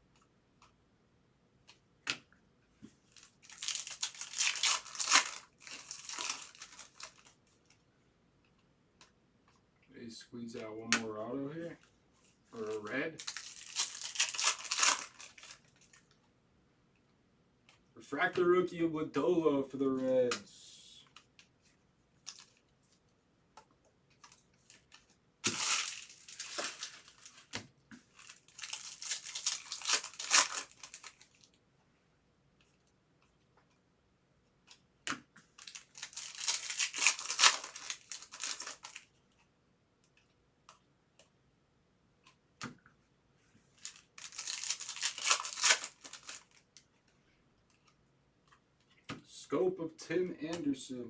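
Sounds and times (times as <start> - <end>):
foil wrappers tearing and crinkling: 3.1 - 7.4, 12.6 - 16.0, 24.7 - 31.5, 35.6 - 39.1, 43.8 - 46.6.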